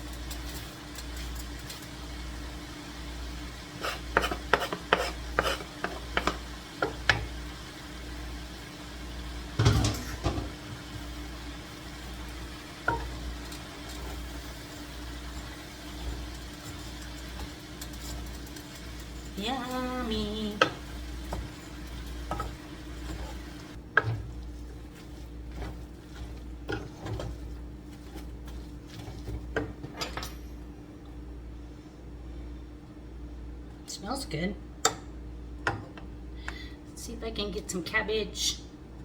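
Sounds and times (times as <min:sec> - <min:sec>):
faint sizzle: 0:00.0 - 0:32.6
utensil scraping a pan: 0:03.7 - 0:06.9, 0:12.8 - 0:29.7.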